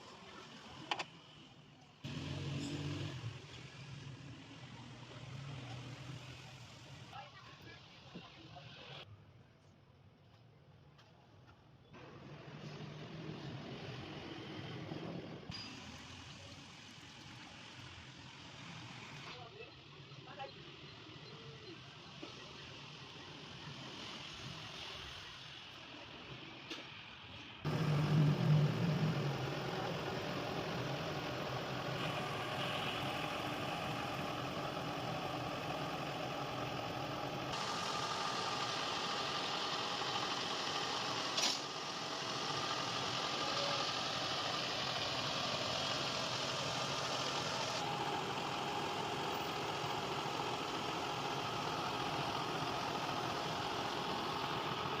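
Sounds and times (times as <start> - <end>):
car engine idling: 27.7 - 55.0.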